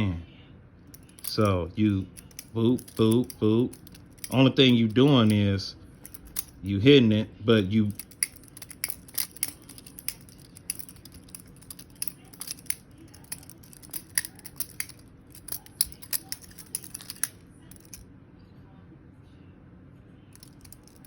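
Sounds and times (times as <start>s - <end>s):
butterfly knife clicking and clacking: 7.9s - 18.0s.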